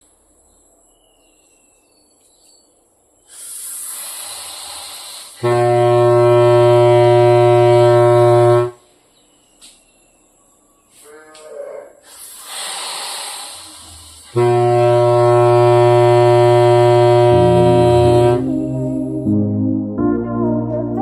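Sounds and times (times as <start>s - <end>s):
air hissing: 3.3s - 8.8s, 12.0s - 18.4s
air horn honk: 5.4s - 8.8s, 14.2s - 19.0s.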